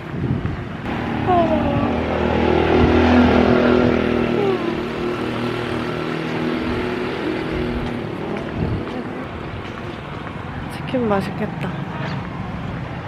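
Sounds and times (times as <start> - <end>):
vehicle engine running: 0.9 - 9.8.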